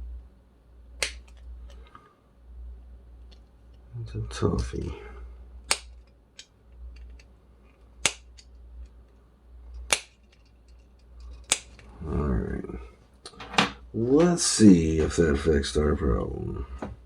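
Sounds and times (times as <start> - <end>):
low hum: 0.0 - 17.0
screwdriver clicking on small parts: 5.7 - 7.3, 9.8 - 11.8.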